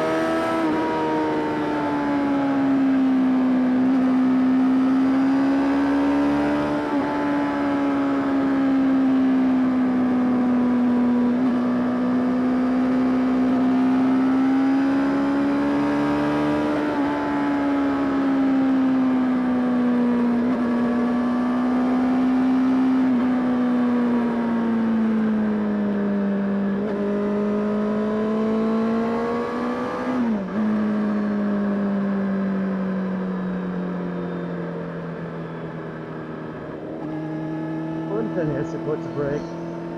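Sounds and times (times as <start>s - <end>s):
motorcycle engine revving: 37.1s - 38.4s.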